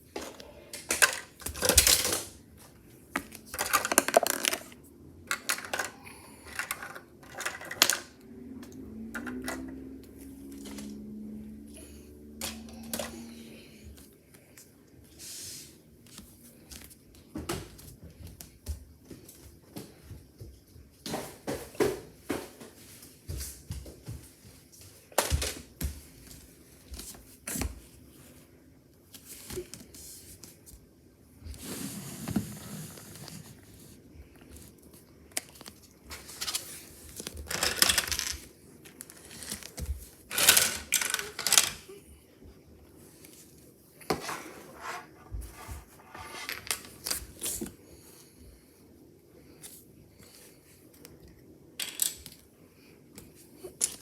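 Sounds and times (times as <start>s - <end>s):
plastic bricks clicking and clattering: 0.7s - 2.4s, 3.2s - 8.2s, 37.2s - 41.9s.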